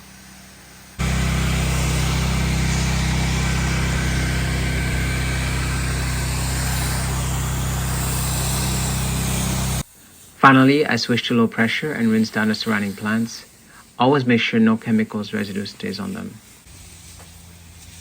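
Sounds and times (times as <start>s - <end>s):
pressure washer engine running: 0.0s - 9.8s, 15.4s - 18.0s
steady hiss: 0.0s - 18.0s.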